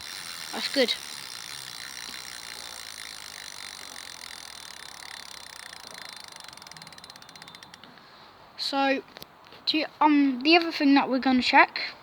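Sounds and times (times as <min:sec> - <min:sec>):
bicycle freewheel ticking: 0:00.0 - 0:07.9.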